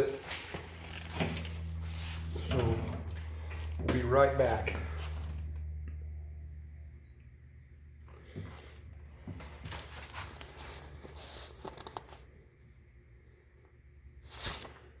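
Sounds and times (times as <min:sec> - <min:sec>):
rustling and handling noise: 0:00.0 - 0:03.8, 0:08.1 - 0:15.0.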